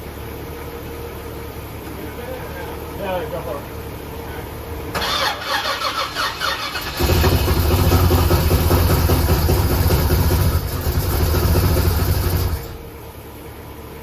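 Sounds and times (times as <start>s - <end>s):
starter cranking engine: 5.0s - 12.8s
engine running loudly: 6.4s - 12.8s.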